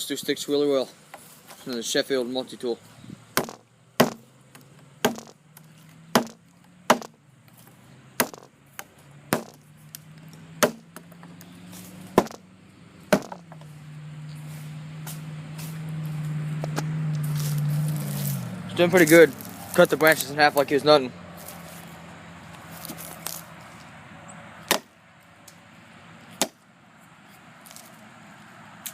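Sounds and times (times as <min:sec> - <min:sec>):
hatchet chopping into branch: 0:03.4 - 0:07.2, 0:08.2 - 0:09.6, 0:10.6 - 0:12.4, 0:13.1 - 0:13.7, 0:24.7 - 0:24.9, 0:26.4 - 0:26.6.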